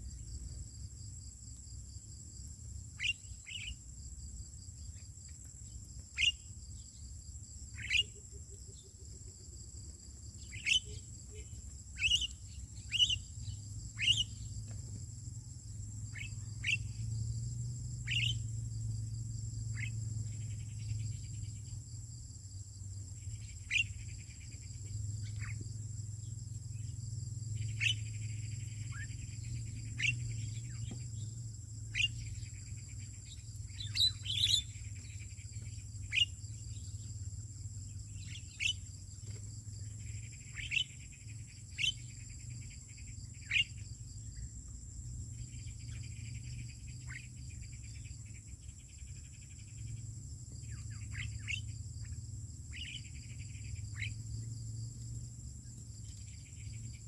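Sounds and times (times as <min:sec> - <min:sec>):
high insect whine: 0:00.0 - 0:57.0
birds chirping: 0:07.7 - 0:08.9, 0:10.1 - 0:15.0, 0:16.0 - 0:18.6, 0:23.1 - 0:37.2, 0:37.8 - 0:44.5, 0:45.4 - 0:54.4.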